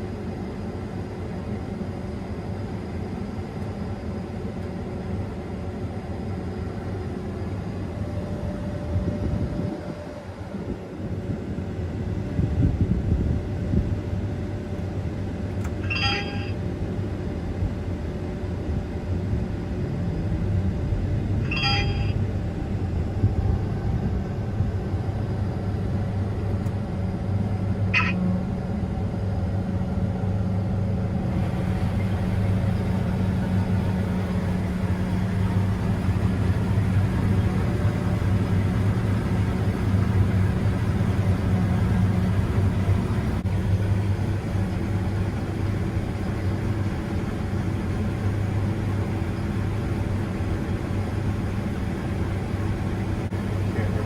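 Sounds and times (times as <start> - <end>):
combine harvester engine: 0.0 - 54.0
high-pitched blips: 15.8 - 16.5, 21.5 - 22.1, 28.0 - 28.2.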